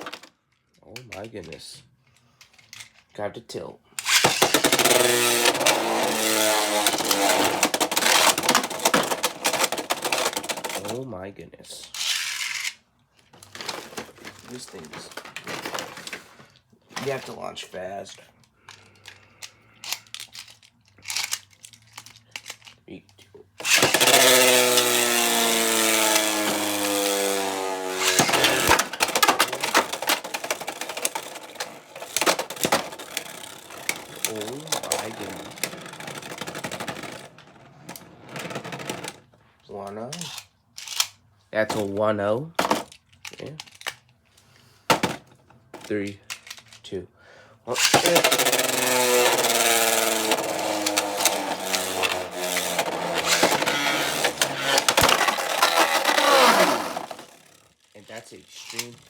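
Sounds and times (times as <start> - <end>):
spinning tops clattering: 4.0 - 10.9, 23.6 - 37.4, 47.7 - 58.9
spinning tops whirring: 4.0 - 11.0, 23.6 - 39.2, 47.7 - 59.0.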